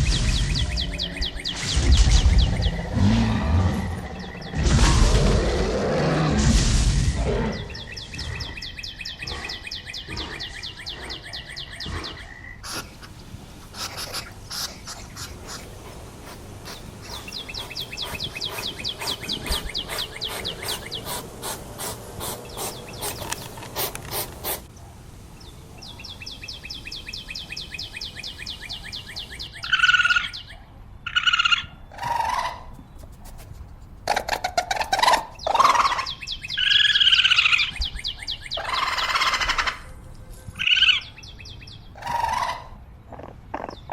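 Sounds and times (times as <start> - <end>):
bird chirps: 0.0 - 4.8, 7.5 - 33.4, 34.9 - 39.6
bird trills: 13.7 - 23.9.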